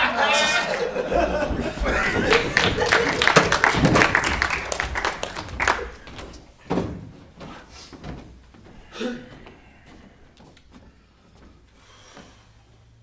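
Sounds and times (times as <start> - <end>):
audience laughter: 0.0 - 6.2
audience applause: 0.0 - 6.5
thuds: 1.0 - 12.4.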